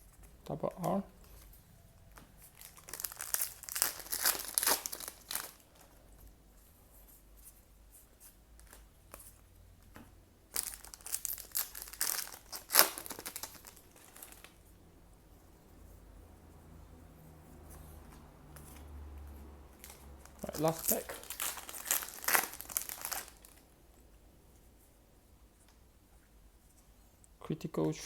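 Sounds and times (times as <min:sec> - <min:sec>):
foil wrappers tearing and crinkling: 0:02.4 - 0:05.8, 0:10.5 - 0:14.6, 0:19.8 - 0:23.6
sharp crackle of foil: 0:02.4 - 0:05.9, 0:10.5 - 0:14.6, 0:19.8 - 0:23.6.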